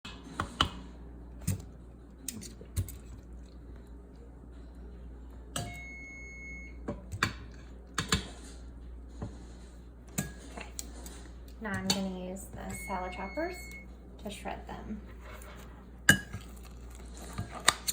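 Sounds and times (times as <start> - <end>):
electronic beep: 12.7 - 13.9.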